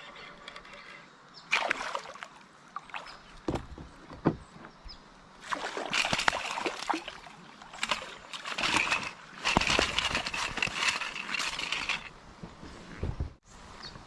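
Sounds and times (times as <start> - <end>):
paddle splashing in water: 1.5 - 4.2, 5.4 - 10.4.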